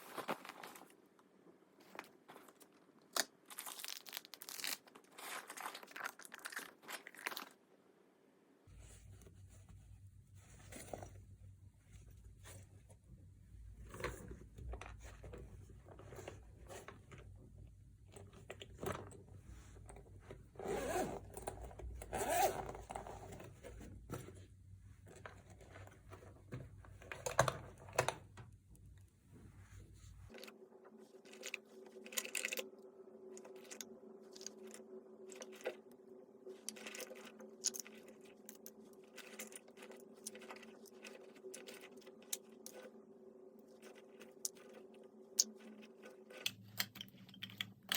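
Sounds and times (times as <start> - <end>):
rustling and scraping of cosmetics: 0.0 - 7.6, 8.7 - 47.9
zipper pulled: 20.6 - 23.5.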